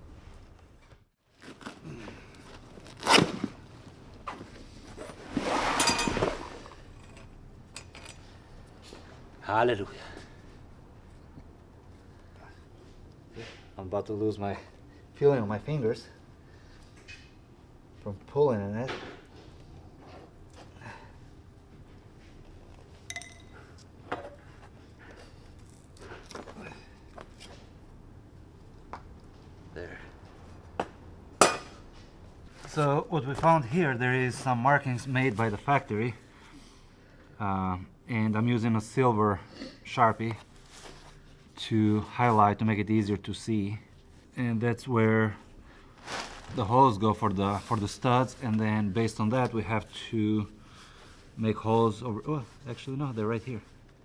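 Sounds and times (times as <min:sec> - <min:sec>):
rasping scrape of glued material: 0:04.9 - 0:06.8
metallic clinks of tools: 0:23.1 - 0:23.7.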